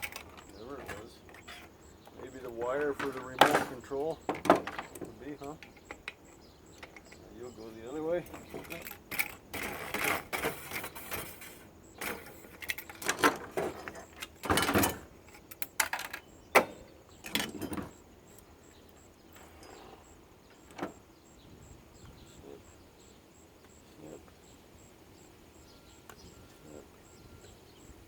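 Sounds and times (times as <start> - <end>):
plastic parts clicking and rattling: 0.0 - 18.0.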